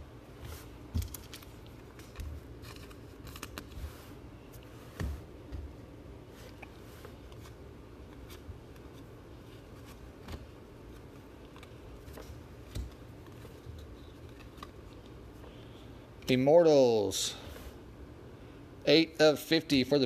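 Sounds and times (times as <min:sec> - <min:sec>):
low room hum: 0:00.0 - 0:20.0
cards and wrappers rustling: 0:00.6 - 0:04.8.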